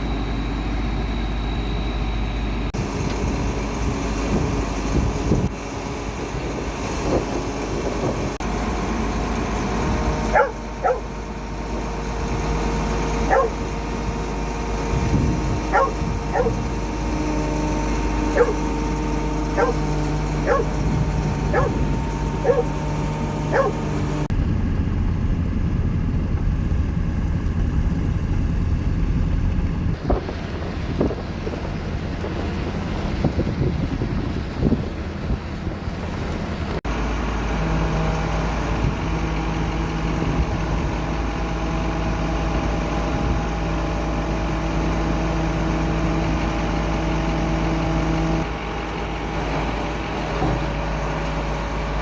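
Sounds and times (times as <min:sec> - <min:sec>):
engine humming: 0:00.0 - 0:52.0
wind noise: 0:02.8 - 0:08.5, 0:14.7 - 0:18.6, 0:19.6 - 0:35.8
dog barking: 0:10.3 - 0:11.1, 0:13.3 - 0:13.7, 0:15.7 - 0:16.7, 0:18.3 - 0:18.7, 0:19.5 - 0:20.9, 0:21.5 - 0:22.8, 0:23.5 - 0:23.9.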